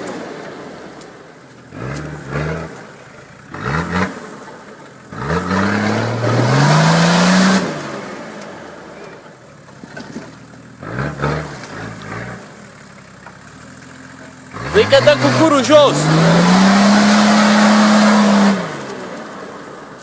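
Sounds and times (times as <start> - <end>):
vehicle engine revving: 0.0 - 20.0.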